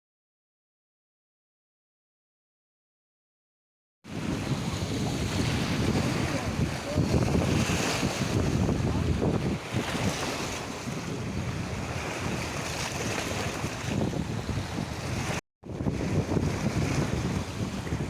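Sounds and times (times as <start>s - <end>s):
sea waves washing in: 4.1s - 18.0s
wind buffeting microphone: 4.1s - 18.0s.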